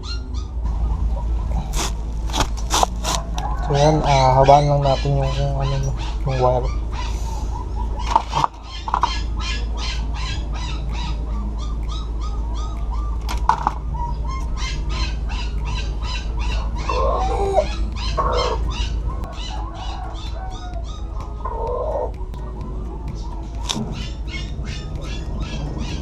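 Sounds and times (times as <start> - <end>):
rhythmic high animal chirping: 0.0 - 26.0
steady low hum: 0.0 - 26.0
short lower animal calls: 3.0 - 22.2.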